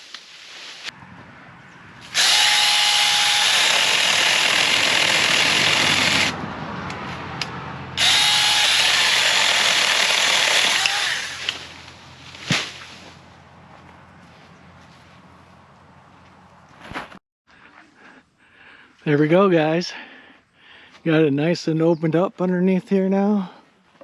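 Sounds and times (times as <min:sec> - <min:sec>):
chainsaw motor whine: 0:02.0 - 0:06.4, 0:08.0 - 0:12.0
electric chainsaw cutting branches: 0:02.0 - 0:06.4, 0:08.0 - 0:12.0.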